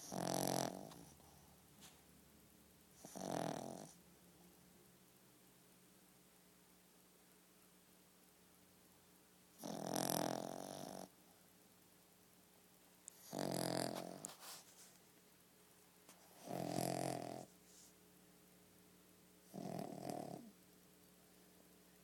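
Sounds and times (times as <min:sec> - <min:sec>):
pet snoring: 0:00.0 - 0:01.4, 0:03.0 - 0:04.0, 0:09.6 - 0:11.2, 0:13.1 - 0:14.4, 0:16.3 - 0:17.5, 0:19.5 - 0:20.5.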